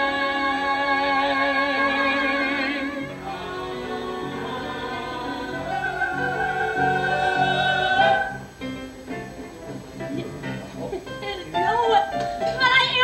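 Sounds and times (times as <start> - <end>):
voices singing with vibrato: 0.0 - 8.6
musical accompaniment with low chords: 0.0 - 13.0.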